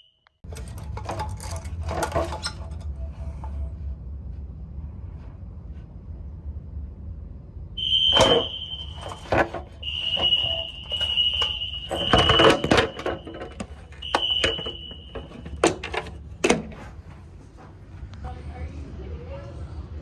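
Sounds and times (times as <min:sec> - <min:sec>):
fire alarm high-pitched tone: 0:00.0 - 0:00.3, 0:07.8 - 0:15.8.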